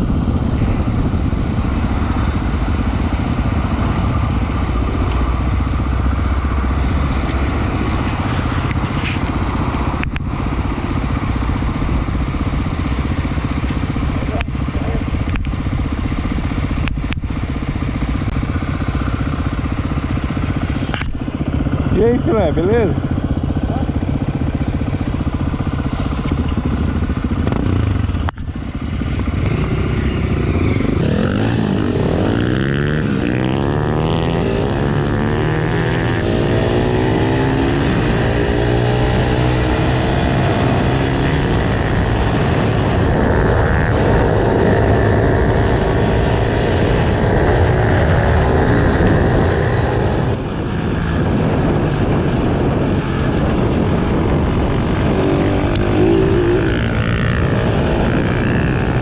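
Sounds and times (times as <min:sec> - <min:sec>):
dirt bike engine accelerating: 0:17.8 - 0:59.0.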